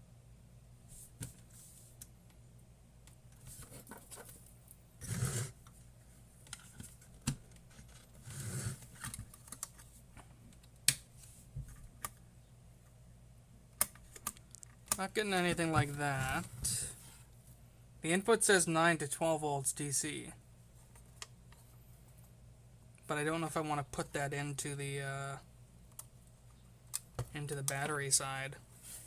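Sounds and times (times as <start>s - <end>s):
rustling and scraping: 3.4s - 10.3s, 28.7s - 29.0s.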